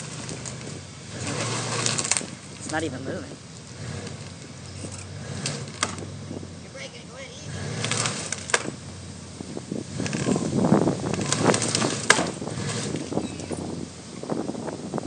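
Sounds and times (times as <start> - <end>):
tree trunk cracking: 0.0 - 6.1, 7.6 - 8.8, 9.8 - 13.6
branches rustling: 0.0 - 15.0.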